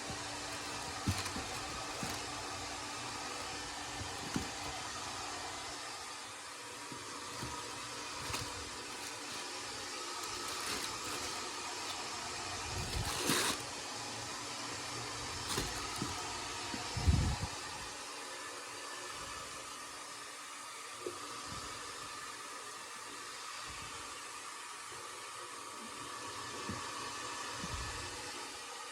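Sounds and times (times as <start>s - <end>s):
handling rustles and knocks: 0.0s - 5.8s, 6.8s - 13.8s, 14.7s - 17.6s.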